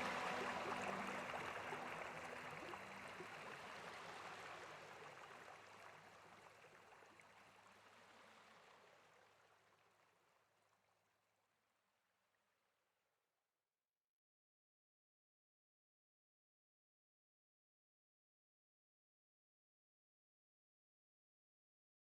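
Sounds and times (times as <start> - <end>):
running water hiss: 0.0 - 4.6.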